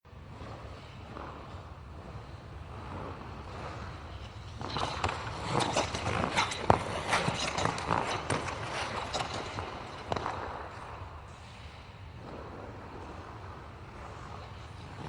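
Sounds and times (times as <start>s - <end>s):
skate blades scraping on ice: 0.2s - 15.0s.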